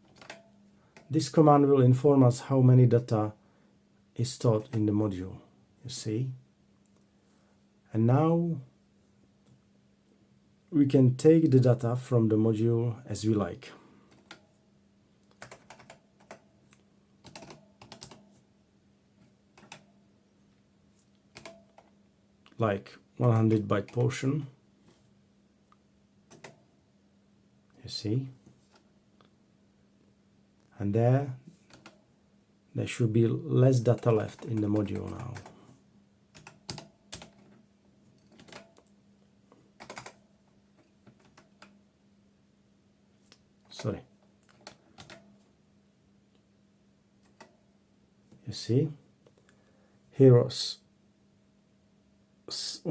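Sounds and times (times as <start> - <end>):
computer keyboard typing: 0.0 - 1.1, 14.1 - 14.4, 15.3 - 16.5, 17.2 - 18.4, 19.6 - 19.9, 21.3 - 21.9, 23.5 - 24.2, 26.3 - 26.6, 31.7 - 32.0, 33.9 - 35.6, 36.3 - 37.6, 38.2 - 38.9, 39.8 - 40.2, 40.8 - 41.8, 43.8 - 45.3
faint steady hum: 0.0 - 52.9.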